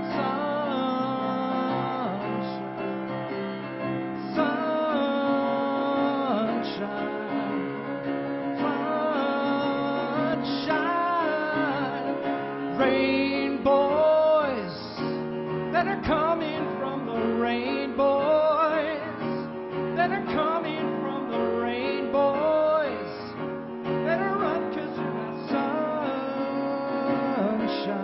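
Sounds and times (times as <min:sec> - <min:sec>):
slow gentle song: 0:00.0 - 0:28.0.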